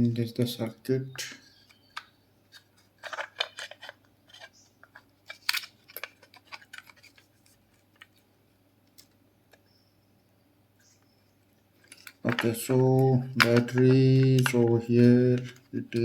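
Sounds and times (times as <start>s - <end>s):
plastic parts clicking and rustling: 1.2s - 9.7s, 11.8s - 16.0s.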